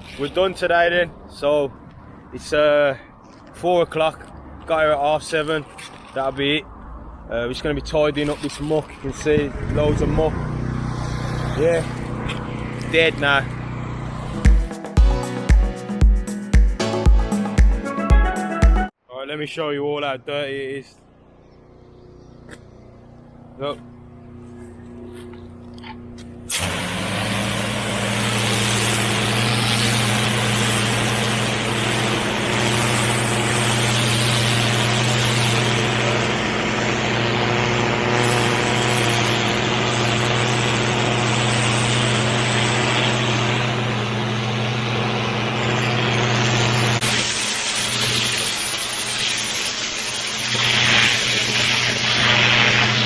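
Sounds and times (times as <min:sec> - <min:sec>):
engine hum: 0:05.9 - 0:14.9, 0:20.6 - 0:53.0
pressure washer water jet hissing: 0:26.5 - 0:53.0.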